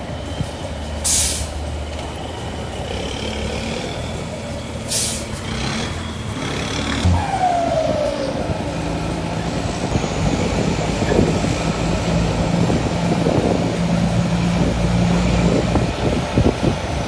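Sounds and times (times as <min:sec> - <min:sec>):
diesel truck engine running: 0:00.0 - 0:17.0
air brake hissing: 0:01.0 - 0:01.7, 0:04.8 - 0:05.5.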